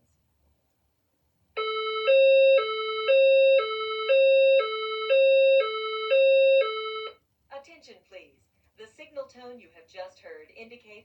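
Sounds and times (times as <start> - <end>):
fire alarm hi-lo alert tone: 1.6 - 7.2.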